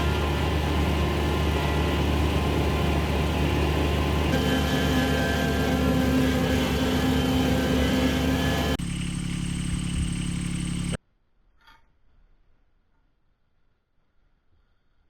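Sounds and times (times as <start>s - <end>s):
engine running steadily: 0.0s - 11.0s.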